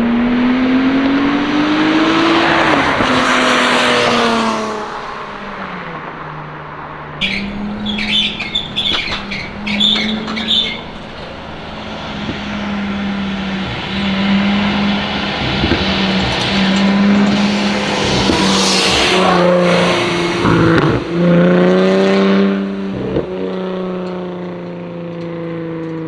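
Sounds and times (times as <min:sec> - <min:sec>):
car engine pulling: 0:00.0 - 0:26.0
exhaust crackles and pops: 0:07.2 - 0:21.3.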